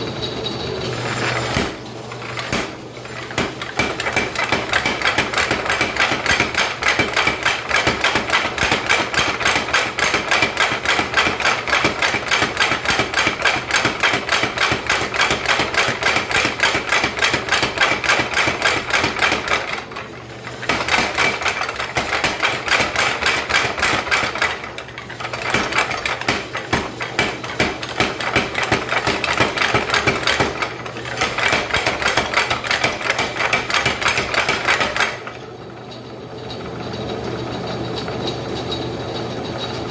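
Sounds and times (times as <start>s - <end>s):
power hammer striking metal: 1.4s - 19.8s, 20.6s - 35.3s.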